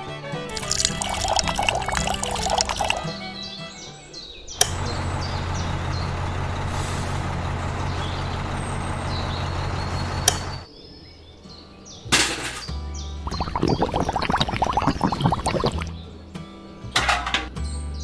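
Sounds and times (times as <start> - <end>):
small motor humming and whirring: 4.6 - 10.6.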